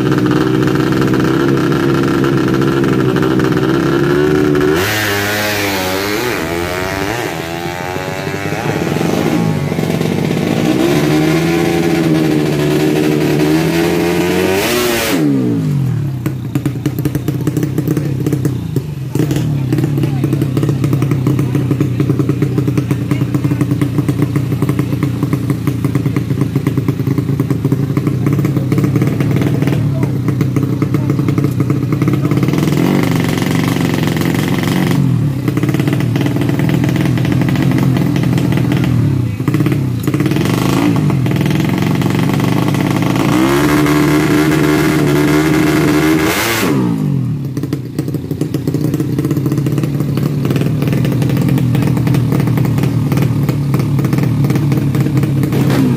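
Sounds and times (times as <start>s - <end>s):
motorcycle engine revving: 0.0s - 55.9s.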